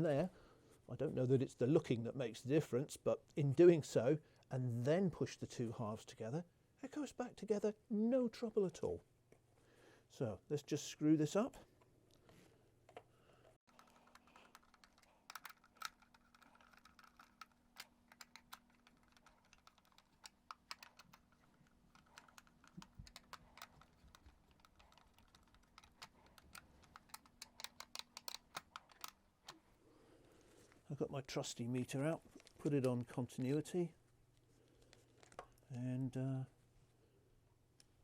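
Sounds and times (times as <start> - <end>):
screwdriver clicking: 13.7 - 29.2.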